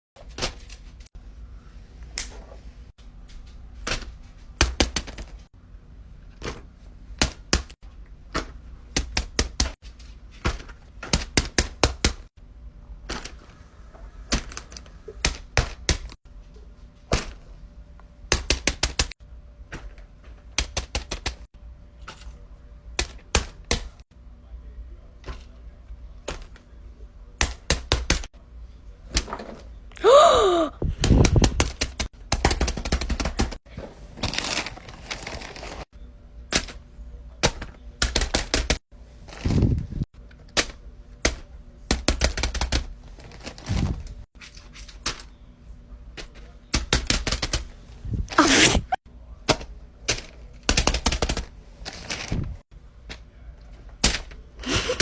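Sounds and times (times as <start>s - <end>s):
plastic toys clicking and tapping: 49.5s - 52.2s.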